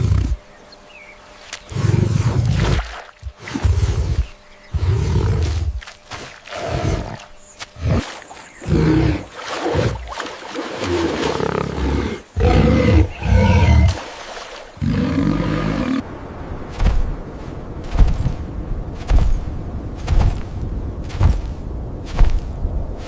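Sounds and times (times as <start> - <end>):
large animal roaring and growling: 7.8 - 10.0, 10.8 - 14.0, 14.8 - 16.0.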